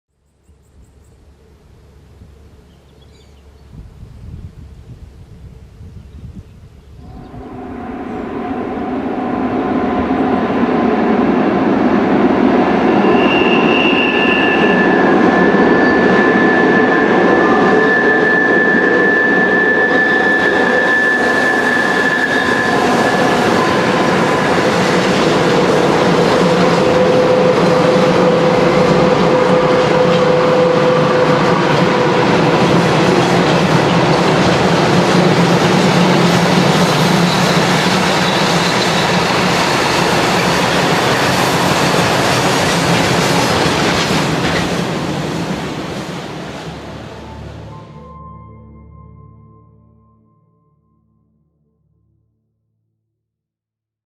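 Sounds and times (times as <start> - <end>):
train wheels rumbling on rail: 3.4 - 47.7
wheel flanges squealing: 13.0 - 46.4.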